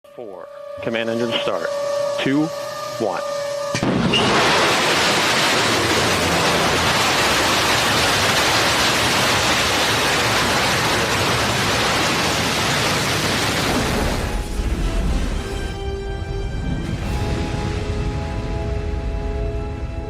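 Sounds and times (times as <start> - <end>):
rocket engine roaring: 0.8 - 15.5.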